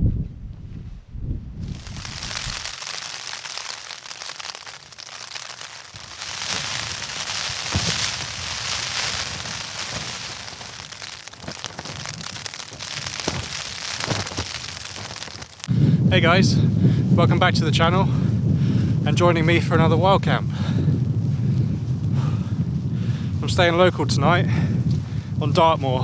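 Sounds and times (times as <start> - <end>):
heavy rain pattering: 1.6 - 15.7.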